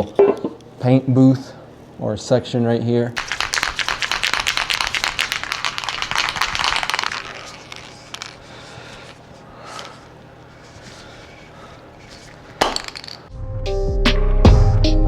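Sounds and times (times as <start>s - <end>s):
spray can ball rattling: 3.2s - 9.2s, 12.1s - 13.3s.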